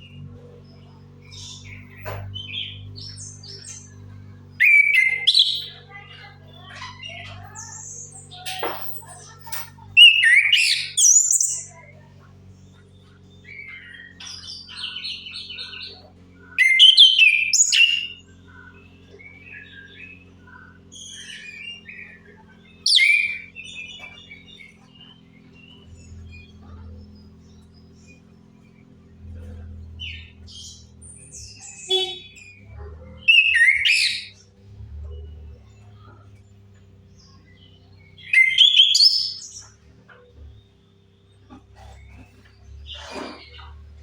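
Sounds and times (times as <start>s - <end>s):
steady low hum: 0.0s - 44.0s
thrush singing whistled notes: 16.6s - 18.2s, 33.2s - 34.4s, 37.6s - 39.7s
thrush whistling song: 38.1s - 39.6s.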